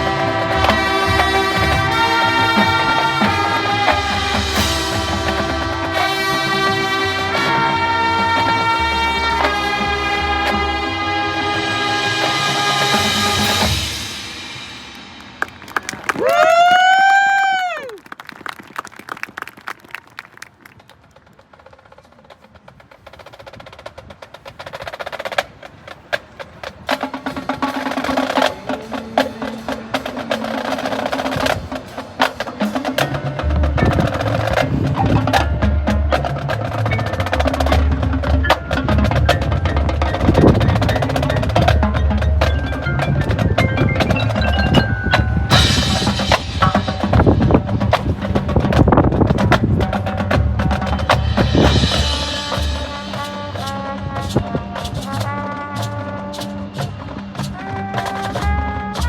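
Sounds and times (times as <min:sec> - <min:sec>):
marching band brass: 0:00.0 - 0:16.9, 0:23.0 - 0:59.0
drum rolls: 0:00.0 - 0:59.0
mallet bells: 0:33.0 - 0:47.5.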